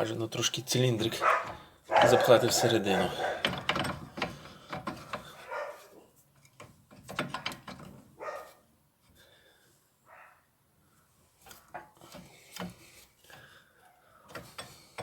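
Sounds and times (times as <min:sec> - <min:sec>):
metal clicks and knocks: 0:01.4 - 0:05.4, 0:06.4 - 0:08.1.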